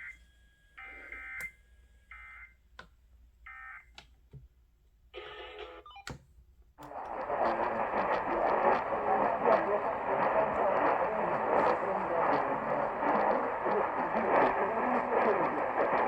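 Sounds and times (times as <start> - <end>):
radio static hiss: 6.8 - 16.0.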